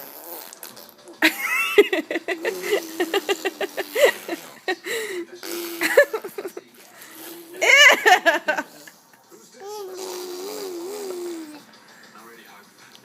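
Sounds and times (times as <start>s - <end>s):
baby squealing: 9.6s - 11.6s
baby babbling pulses: 9.6s - 11.7s.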